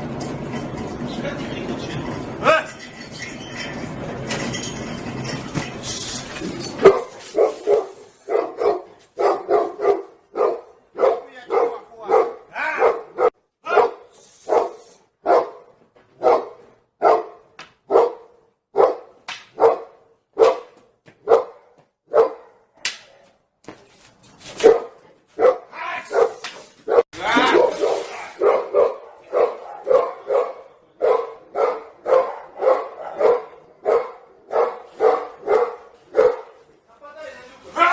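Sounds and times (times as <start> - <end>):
dog barking: 6.8 - 22.7, 24.6 - 36.6.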